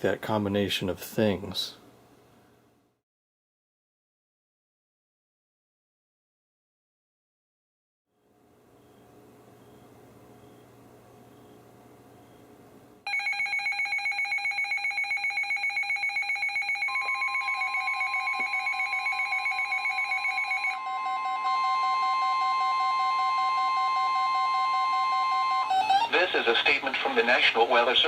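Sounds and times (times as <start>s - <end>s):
steady warning alarm tone: 8.8s - 12.5s, 13.1s - 26.4s
rapid electronic alarm beeping: 13.1s - 26.3s.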